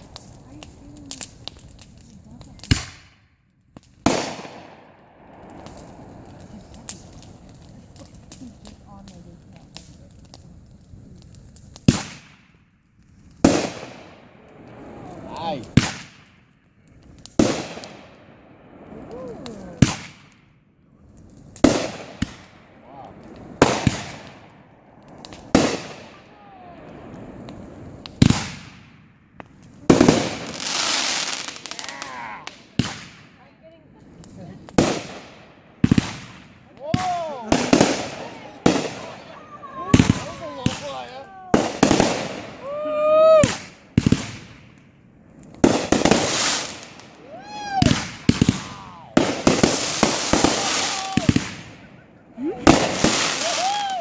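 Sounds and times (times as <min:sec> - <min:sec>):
fireworks booming: 0:03.8 - 0:10.4, 0:13.4 - 0:20.5, 0:21.2 - 0:33.4, 0:34.0 - 0:54.0.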